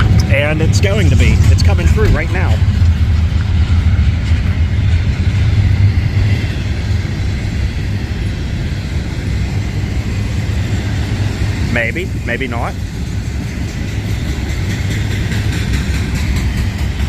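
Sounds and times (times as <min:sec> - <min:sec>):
freight train rumbling past: 0:00.0 - 0:17.0.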